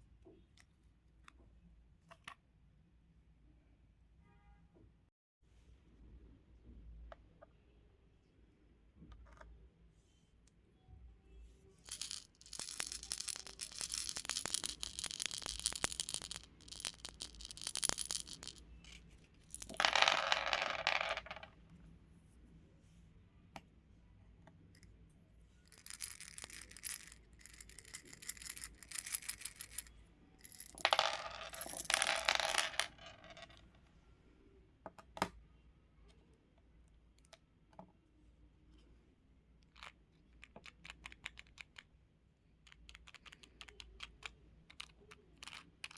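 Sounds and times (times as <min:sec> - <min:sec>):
beads rattling and clattering: 0:11.8 - 0:21.5, 0:25.6 - 0:33.5.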